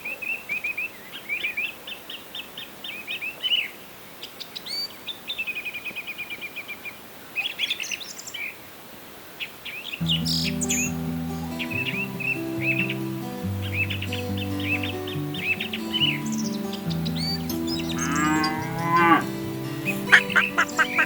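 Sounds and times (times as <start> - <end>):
birds chirping: 10.0 - 21.0
bird trill: 13.6 - 21.0.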